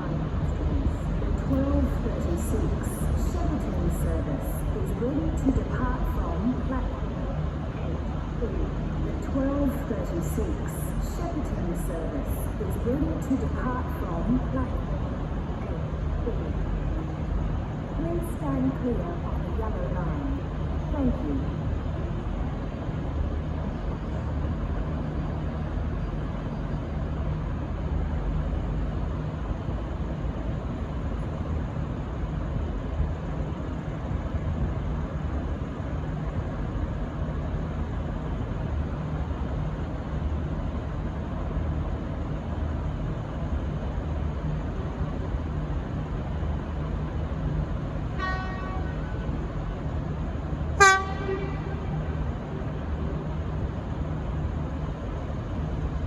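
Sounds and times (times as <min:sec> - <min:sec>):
diesel railcar engine idling: 0:00.0 - 0:56.0
train horn toots: 0:48.2 - 0:49.4, 0:50.8 - 0:52.6.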